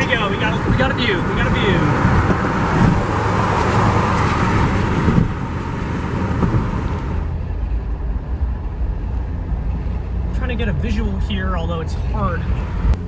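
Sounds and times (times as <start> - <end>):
engine and tyre rumble: 0.0 - 13.0.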